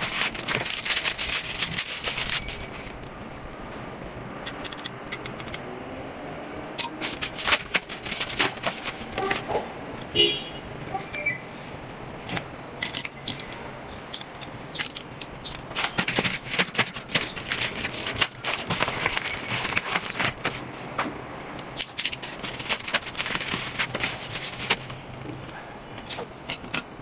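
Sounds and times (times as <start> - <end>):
packaging crackling and tearing: 0.0 - 3.1, 6.8 - 9.6, 14.7 - 20.7, 21.6 - 25.0
sharp clicks: 4.4 - 5.6.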